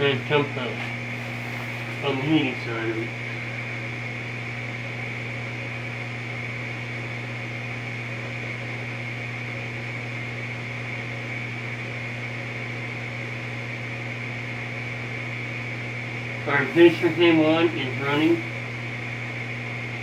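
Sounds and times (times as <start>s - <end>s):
furnace blower humming: 0.0s - 20.0s
faint high whine: 16.4s - 18.9s.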